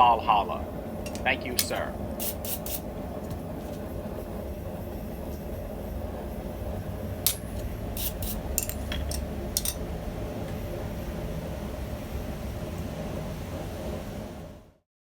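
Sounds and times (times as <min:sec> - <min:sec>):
steady low rumble: 0:00.0 - 0:14.6
light metal clicks and clinks: 0:08.6 - 0:09.8.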